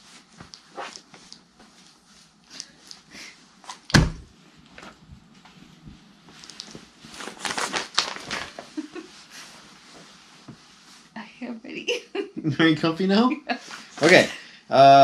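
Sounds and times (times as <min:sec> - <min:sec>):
sharp thump: 0:03.9 - 0:04.3
rustling and crinkling: 0:04.5 - 0:11.2.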